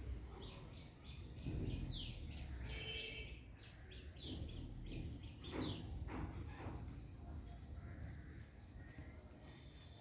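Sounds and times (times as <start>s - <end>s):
small birds chirping: 0.0s - 10.0s.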